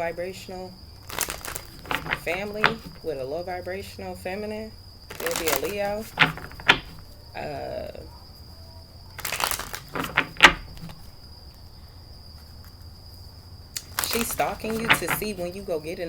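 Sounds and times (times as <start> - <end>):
objects knocking and tapping: 1.1 - 3.2, 5.1 - 7.2, 9.2 - 11.2, 13.8 - 15.6.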